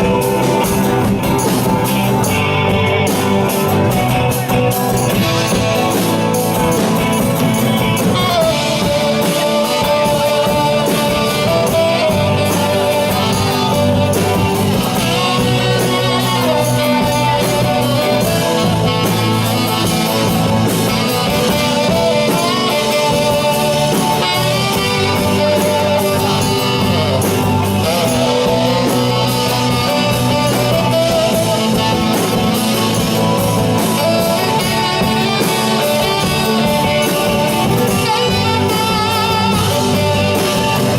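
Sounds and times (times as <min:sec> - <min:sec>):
guitar: 0:00.0 - 0:40.9
live band music: 0:00.0 - 0:40.9.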